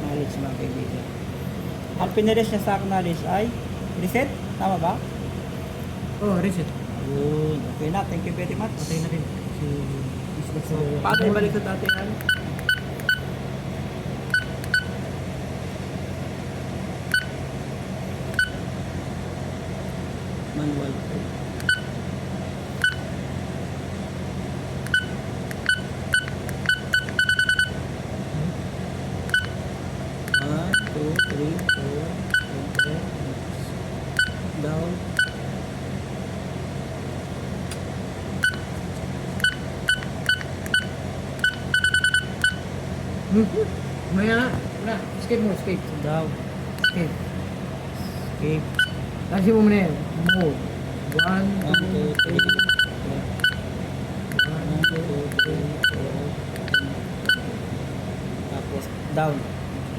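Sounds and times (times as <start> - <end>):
steady low hum: 0.0 - 59.9
key-press beeps: 11.1 - 13.3, 14.2 - 15.0, 17.1 - 17.4, 18.3 - 18.7, 21.6 - 22.0, 22.8 - 23.1, 24.8 - 27.8, 29.2 - 29.6, 30.2 - 33.0, 34.2 - 34.5, 35.1 - 35.4, 38.4 - 38.7, 39.4 - 42.7, 46.8 - 47.1, 48.7 - 49.0, 50.2 - 53.7, 54.3 - 57.5
short high key beeps: 39.4 - 42.6, 51.1 - 53.6.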